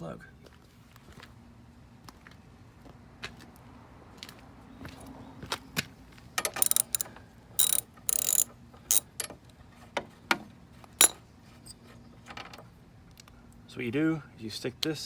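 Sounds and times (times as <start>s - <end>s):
metal parts rattling: 6.4s - 9.3s
metal tools clicking and clacking: 6.4s - 9.4s.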